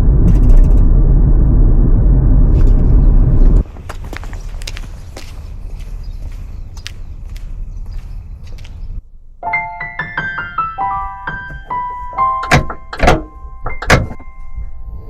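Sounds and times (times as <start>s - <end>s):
gentle piano music: 9.4s - 15.0s.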